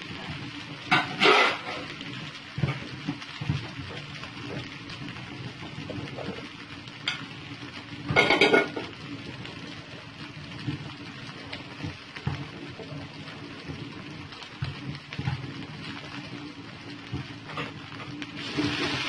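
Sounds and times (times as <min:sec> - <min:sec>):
faint sizzle: 0:00.0 - 0:19.0
spatula scraping noodles in pan: 0:00.8 - 0:02.0.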